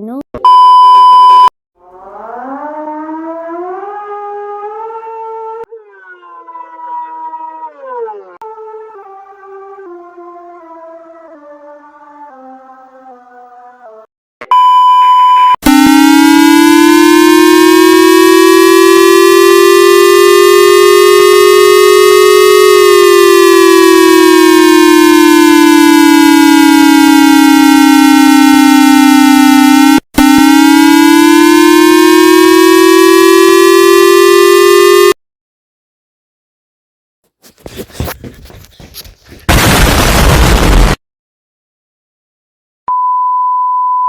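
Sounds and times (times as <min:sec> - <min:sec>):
synthesized siren wail: 0:01.8 - 0:11.4, 0:15.6 - 0:35.2.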